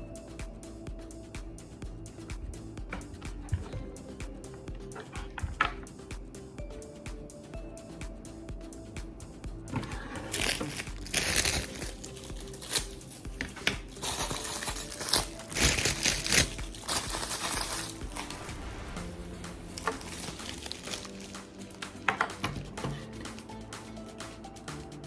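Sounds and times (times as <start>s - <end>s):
quiet background music: 0.0s - 25.0s
plastic packaging crinkling: 10.3s - 18.5s, 19.8s - 21.3s.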